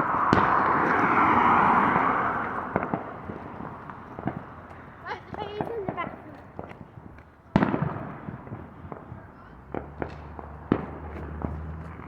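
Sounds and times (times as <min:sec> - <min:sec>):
firework cracks: 0:00.0 - 0:04.6, 0:05.3 - 0:12.0
loud firework bang: 0:00.3 - 0:01.1, 0:07.5 - 0:11.5.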